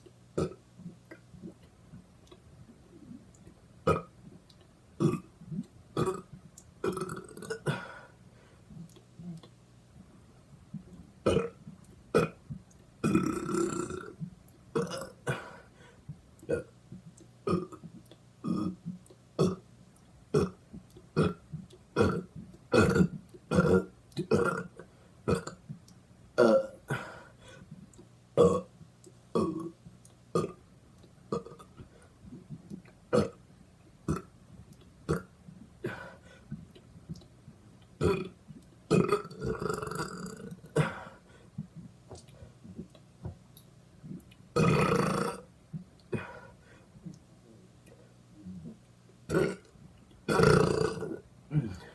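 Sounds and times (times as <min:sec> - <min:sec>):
person burping: 0:00.4 - 0:00.6, 0:03.9 - 0:04.1, 0:05.0 - 0:08.1, 0:11.2 - 0:12.4, 0:13.0 - 0:14.2, 0:14.8 - 0:15.6, 0:17.5 - 0:18.8, 0:19.4 - 0:19.6, 0:20.4 - 0:20.6, 0:21.2 - 0:21.4, 0:22.0 - 0:25.6, 0:26.4 - 0:27.2, 0:28.4 - 0:28.7, 0:29.4 - 0:29.8, 0:30.4 - 0:30.6, 0:31.3 - 0:31.7, 0:33.1 - 0:33.4, 0:35.1 - 0:36.2, 0:38.0 - 0:41.2, 0:44.6 - 0:45.5, 0:46.1 - 0:46.5, 0:48.5 - 0:49.7, 0:50.3 - 0:51.9.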